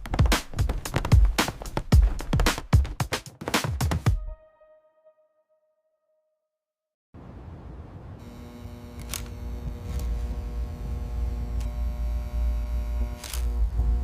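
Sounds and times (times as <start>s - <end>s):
steady hum: 8.2s - 14.0s
sharp clicks: 9.0s - 9.4s.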